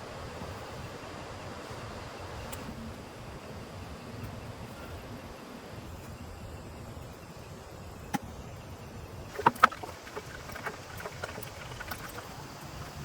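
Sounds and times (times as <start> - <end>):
cluster of knocks: 9.3 - 12.2.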